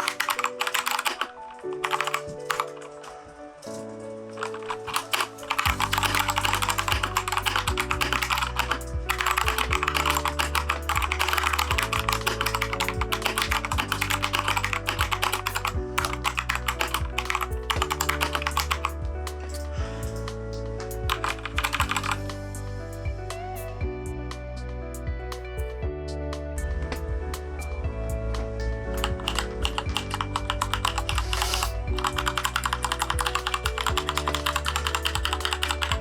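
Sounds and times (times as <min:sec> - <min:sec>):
mechanical keyboard typing: 0:00.0 - 0:03.8, 0:04.4 - 0:19.6, 0:21.0 - 0:22.2, 0:29.0 - 0:36.0
soft background music: 0:00.0 - 0:36.0.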